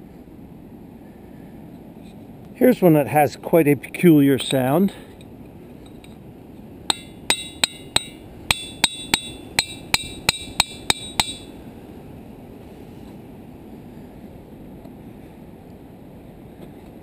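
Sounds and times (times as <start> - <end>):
hammer striking ringing rock: 6.9 - 11.6.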